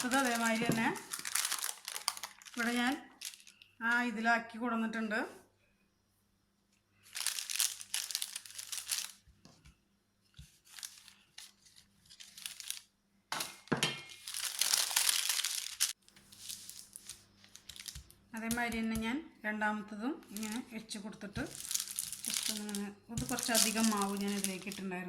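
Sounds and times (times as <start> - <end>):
wrapping sheet crinkling: 0.0 - 4.0, 7.0 - 9.3, 10.4 - 18.2, 20.2 - 20.8, 21.4 - 24.9.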